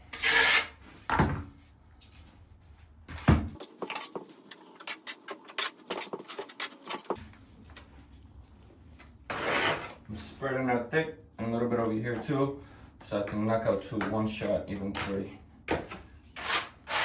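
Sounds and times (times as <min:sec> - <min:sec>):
trowel scraping tile: 0:00.1 - 0:00.8, 0:09.3 - 0:10.0, 0:16.4 - 0:17.0.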